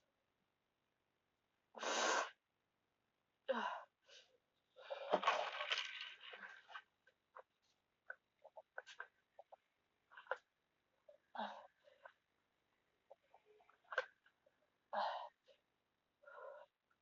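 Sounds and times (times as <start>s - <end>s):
woman breathing heavily: 14.9s - 15.6s, 16.2s - 16.8s.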